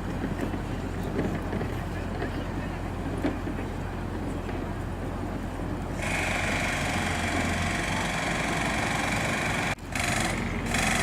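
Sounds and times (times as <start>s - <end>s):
machine engine running: 6.0s - 11.0s.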